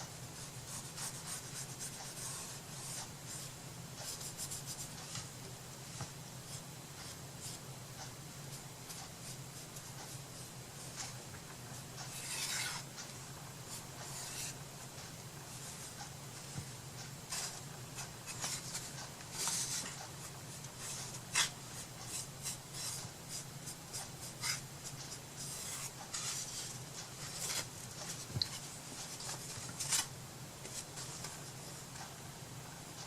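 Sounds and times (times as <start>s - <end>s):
steady low hum: 0.0s - 33.0s
paintbrush strokes on wood: 15.4s - 29.6s.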